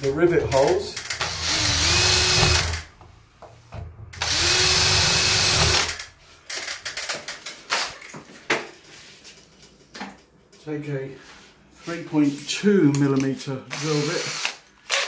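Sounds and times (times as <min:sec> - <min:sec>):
electric drill drilling: 0:01.2 - 0:02.9, 0:04.2 - 0:06.1, 0:13.7 - 0:15.0.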